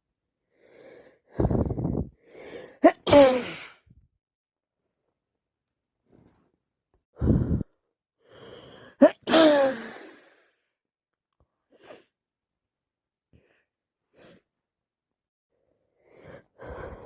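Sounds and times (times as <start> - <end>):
woman sneezing: 2.8 - 3.8, 9.0 - 10.0
gasping inhale: 7.2 - 9.0, 16.0 - 17.0.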